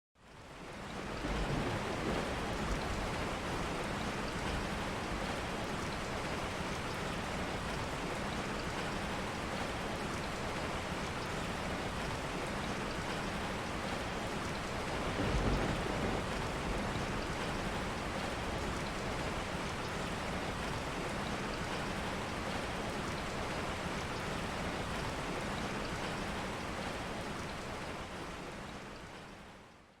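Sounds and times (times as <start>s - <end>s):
heavy rain pouring: 0.5s - 29.1s
low rolling thunder: 1.0s - 3.8s, 14.8s - 18.2s.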